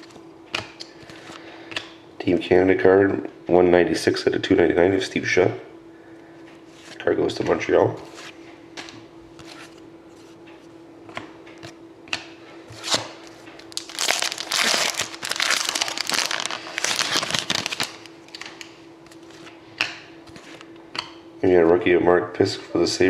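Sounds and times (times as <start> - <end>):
foil wrapper crinkling: 13.7 - 18.7.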